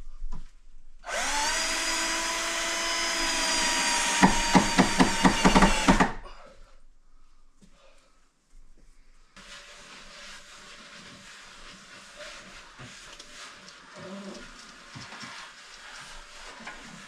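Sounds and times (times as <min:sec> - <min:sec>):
drill motor spinning: 0:01.1 - 0:06.2
drill clutch clicking: 0:03.9 - 0:06.2.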